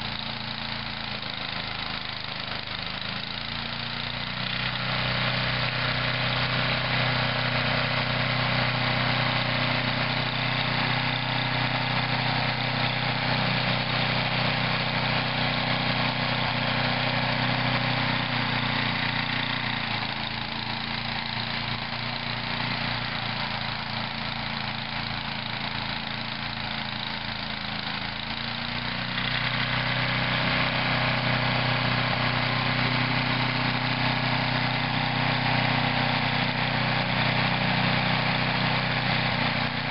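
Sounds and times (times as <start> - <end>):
snow thrower engine running: 0.0 - 39.9.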